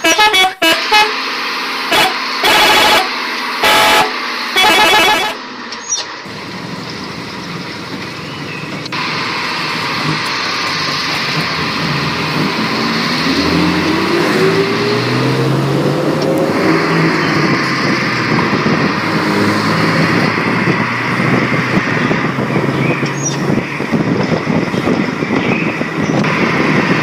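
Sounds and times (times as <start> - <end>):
bus horn tune: 0.0 - 5.4
bus engine revving: 0.0 - 27.0.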